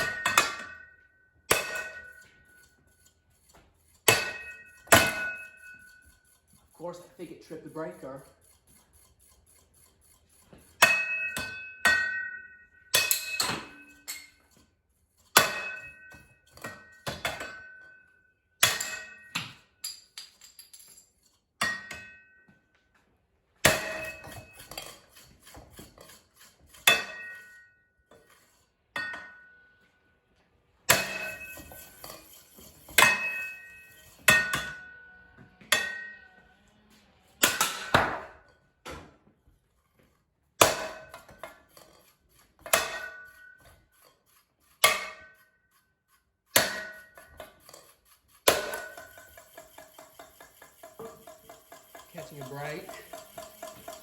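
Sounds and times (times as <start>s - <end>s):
short metallic ring: 4.1s - 6.2s, 10.9s - 14.4s, 15.4s - 19.8s, 26.8s - 28.4s, 30.9s - 36.4s.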